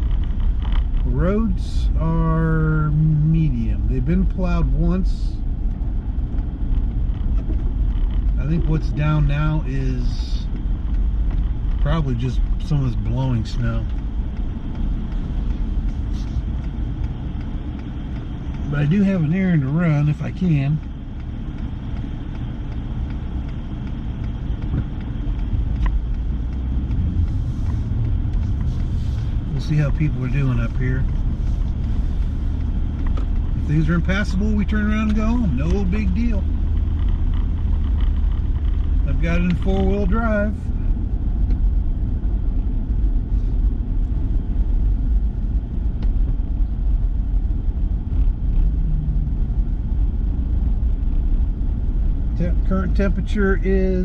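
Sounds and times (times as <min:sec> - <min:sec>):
truck engine rumble: 0:00.0 - 0:54.0
tyres on snowy road: 0:00.0 - 0:54.0.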